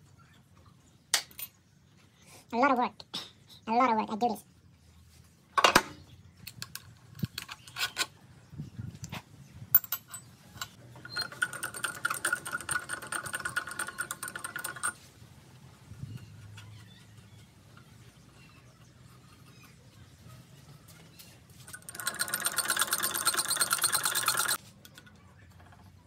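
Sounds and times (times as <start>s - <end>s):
small metal parts clinking: 9.7s - 15.0s, 21.7s - 26.0s
small machine whirring: 21.7s - 24.6s.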